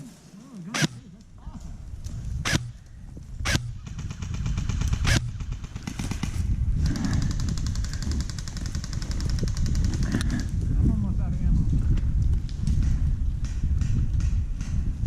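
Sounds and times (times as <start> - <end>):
airsoft rifle firing bursts: 0.8 - 1.0, 2.5 - 2.8, 3.5 - 10.1.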